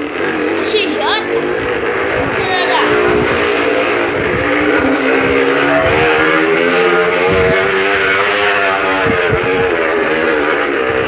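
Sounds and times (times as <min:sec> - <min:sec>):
motor-like buzzing noisemaker: 0:00.0 - 0:11.0.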